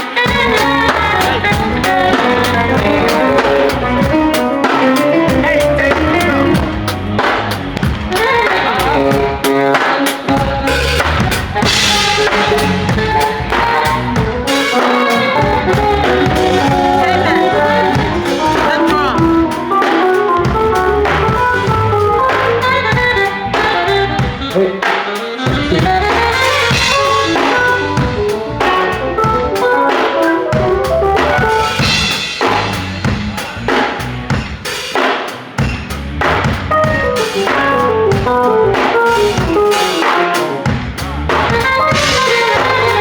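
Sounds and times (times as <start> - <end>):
bass: 0.0 - 43.0
drum kit playing: 0.0 - 43.0
melodic part: 11.6 - 23.0, 26.7 - 32.0, 36.7 - 40.8.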